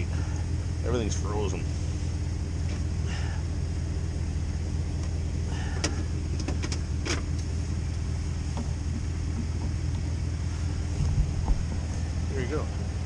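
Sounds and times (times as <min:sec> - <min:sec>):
pickup truck engine idling: 0:00.0 - 0:13.0
sharp clicks and knocks: 0:05.8 - 0:10.1.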